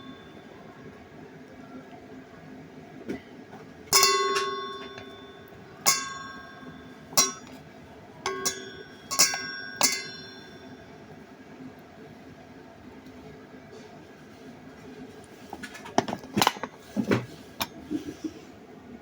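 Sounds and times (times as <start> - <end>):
utensils clinking on dishes: 3.9 - 10.8, 15.6 - 16.8.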